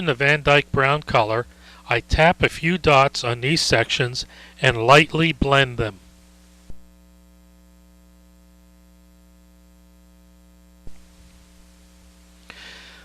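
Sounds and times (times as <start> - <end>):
electrical mains hum: 0.0 - 13.0
faint hiss: 10.8 - 13.0.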